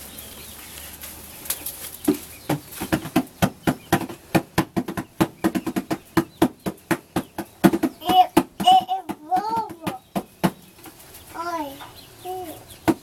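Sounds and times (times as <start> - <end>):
rapid sharp taps: 2.1 - 10.6.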